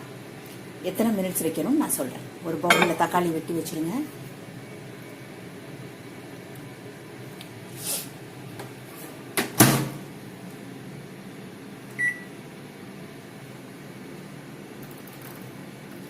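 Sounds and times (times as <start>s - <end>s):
keypad beep: 12.0s - 12.3s.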